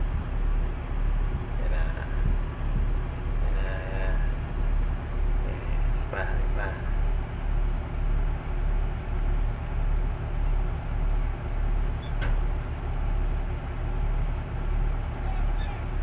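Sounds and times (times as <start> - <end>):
heavy diesel engine under load: 0.0 - 16.0.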